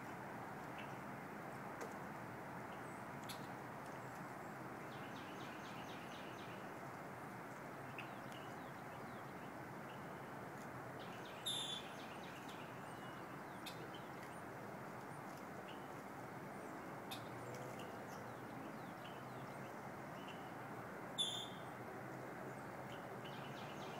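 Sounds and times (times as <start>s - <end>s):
outdoor background hiss: 0.0s - 23.9s
small birds chirping: 11.0s - 14.5s, 21.2s - 21.7s
high-pitched bird calls: 11.4s - 11.9s, 21.2s - 21.6s.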